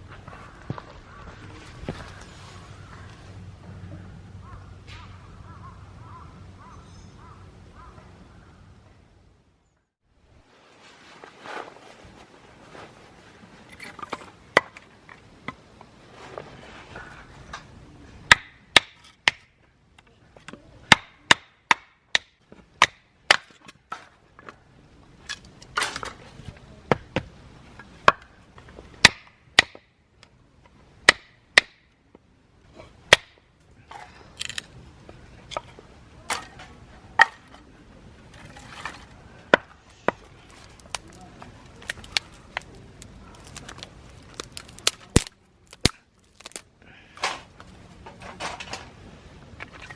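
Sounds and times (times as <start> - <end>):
chopping strikes on wood: 18.3 - 19.5, 20.9 - 23.6, 29.0 - 29.9, 31.1 - 31.8, 33.1 - 33.4.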